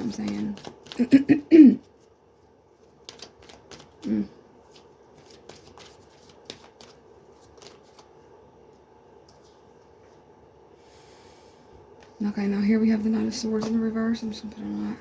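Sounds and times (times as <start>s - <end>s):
cards being shuffled: 0.0s - 1.2s, 2.8s - 8.2s.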